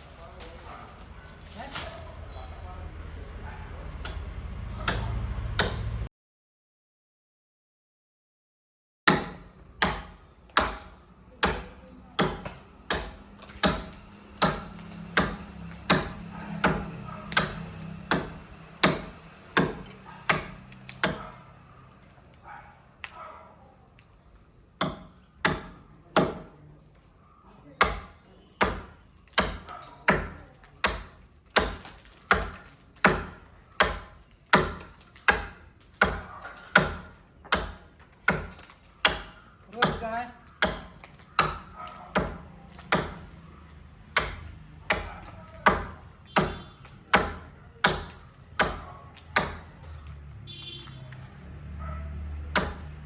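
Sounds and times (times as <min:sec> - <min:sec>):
axe chopping into tree trunk: 0:04.9 - 0:06.0, 0:09.1 - 0:21.4, 0:24.8 - 0:26.5, 0:27.8 - 0:43.4, 0:44.1 - 0:50.8, 0:52.5 - 0:53.0.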